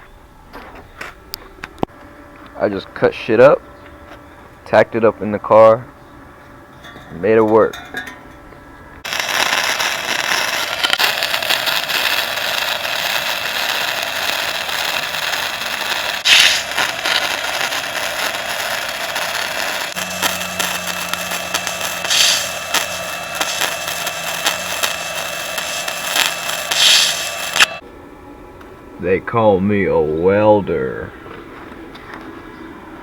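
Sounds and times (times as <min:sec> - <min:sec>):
low hum: 0:05.8 - 0:29.0
welding arc crackling: 0:09.0 - 0:27.8.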